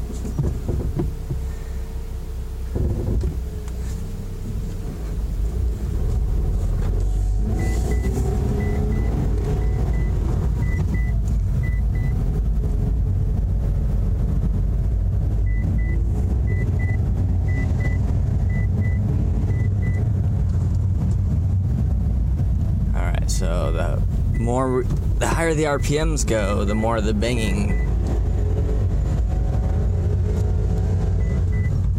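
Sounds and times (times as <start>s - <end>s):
car engine and road rumble: 0.0s - 31.9s
high double beep: 26.7s - 27.9s.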